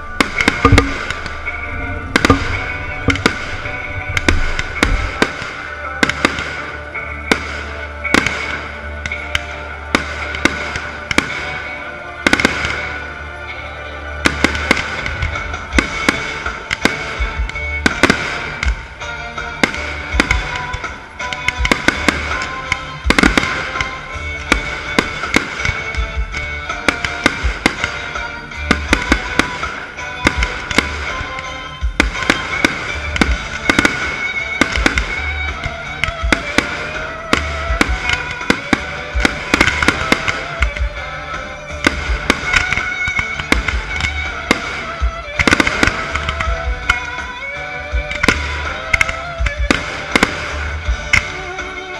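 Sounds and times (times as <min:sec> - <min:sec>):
music with pulsing bass: 0:00.0 - 0:08.4
fireworks bursting and crackling: 0:00.0 - 0:51.9.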